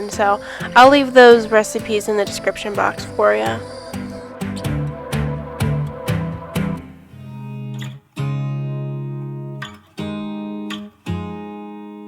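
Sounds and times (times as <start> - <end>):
guitar chords strummed: 0.0 - 12.0.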